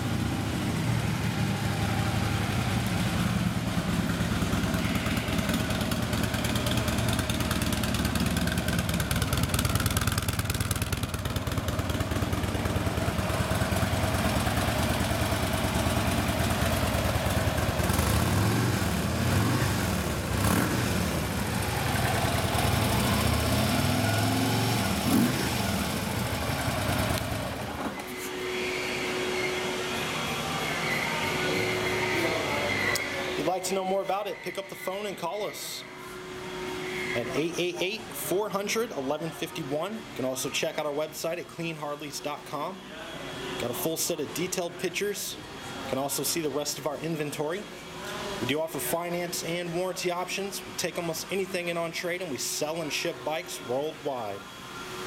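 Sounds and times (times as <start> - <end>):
motorcycle engine idling and revving: 0.0 - 30.0.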